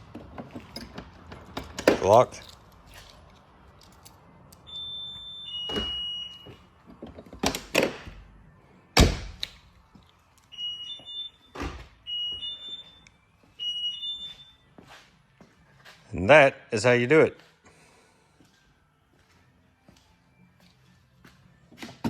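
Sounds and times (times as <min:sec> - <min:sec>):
door lock actuators clunking: 0:00.0 - 0:03.4, 0:06.8 - 0:08.2.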